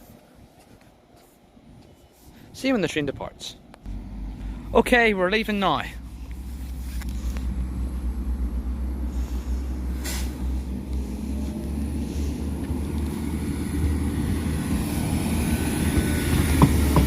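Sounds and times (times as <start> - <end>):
train engine rumble: 3.6 - 17.0.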